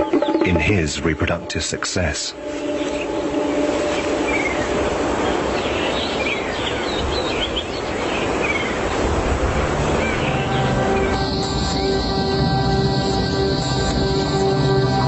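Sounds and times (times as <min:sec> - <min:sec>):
steady outdoor noise: 0:00.0 - 0:15.0
soft music with held tones: 0:09.6 - 0:15.0
high quick chirping calls: 0:09.9 - 0:15.0.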